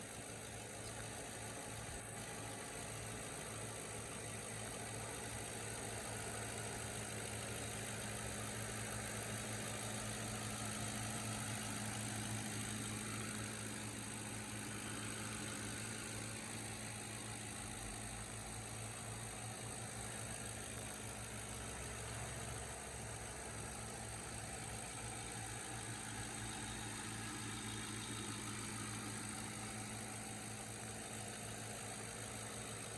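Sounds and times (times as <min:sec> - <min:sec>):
car engine idling: 0:00.0 - 0:32.9.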